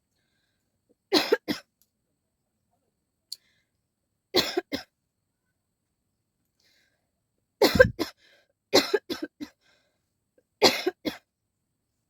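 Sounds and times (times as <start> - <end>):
person coughing: 7.6 - 8.1, 10.6 - 11.2.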